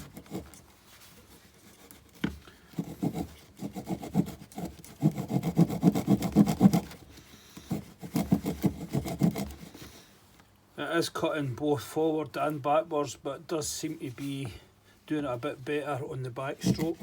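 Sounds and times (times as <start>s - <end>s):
saw rasping through green wood: 0.0s - 0.6s, 1.5s - 10.0s.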